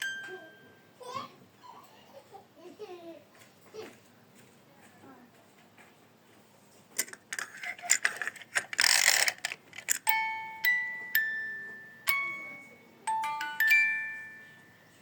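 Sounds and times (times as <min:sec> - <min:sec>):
clicking and rattling: 0:07.0 - 0:10.1
chime-like struck notes: 0:10.1 - 0:15.0.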